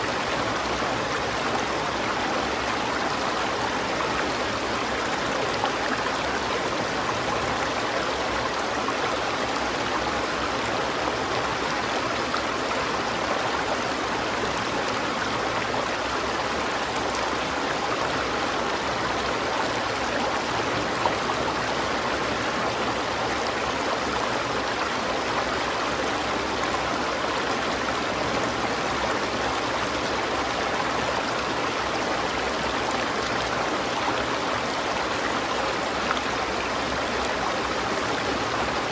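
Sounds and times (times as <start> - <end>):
river water flowing: 0.0 - 38.9.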